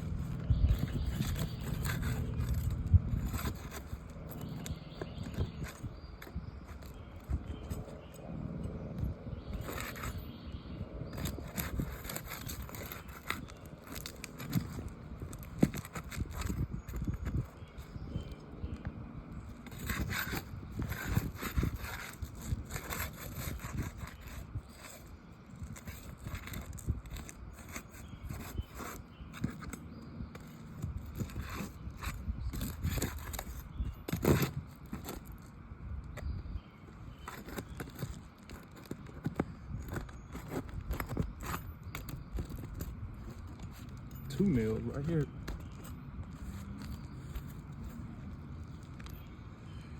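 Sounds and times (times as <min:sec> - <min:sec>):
steady low rumble: 0:00.0 - 0:23.5
tool scraping roof shingles: 0:00.0 - 0:36.2, 0:37.0 - 0:49.2.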